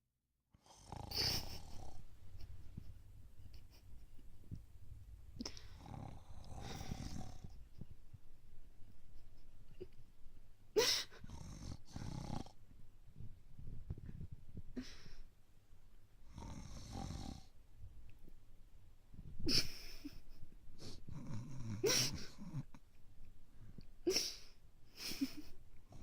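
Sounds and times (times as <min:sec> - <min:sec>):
breathy snoring: 0:00.6 - 0:02.1, 0:05.4 - 0:07.6, 0:11.0 - 0:12.6, 0:16.3 - 0:17.5.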